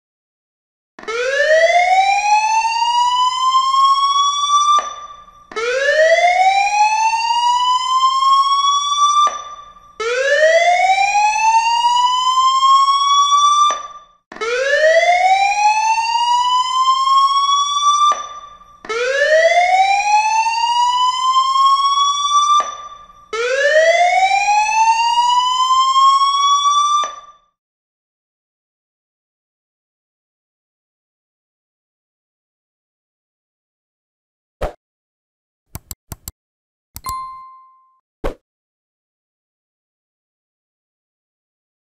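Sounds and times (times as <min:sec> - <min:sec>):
burglar alarm siren wailing: 0:01.0 - 0:27.4.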